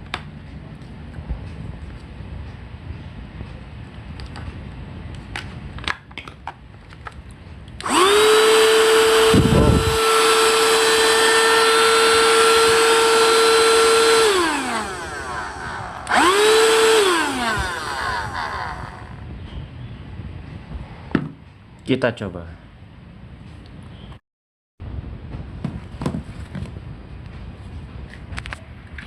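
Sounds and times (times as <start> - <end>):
handheld vacuum cleaner motor: 7.8 - 19.2.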